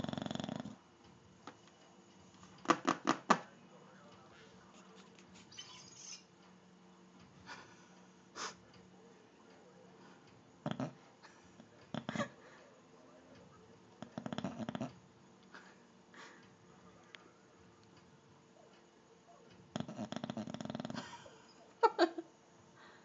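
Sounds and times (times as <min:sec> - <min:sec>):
dog snoring: 0:00.0 - 0:00.8, 0:10.6 - 0:11.1, 0:14.0 - 0:15.0, 0:19.7 - 0:21.2.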